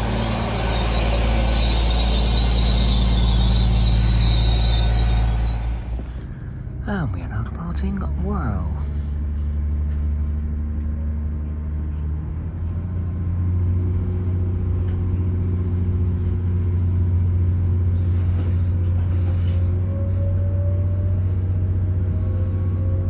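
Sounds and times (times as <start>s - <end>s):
train whine rising in pitch: 0.0s - 6.2s
train engine hum: 0.0s - 6.4s.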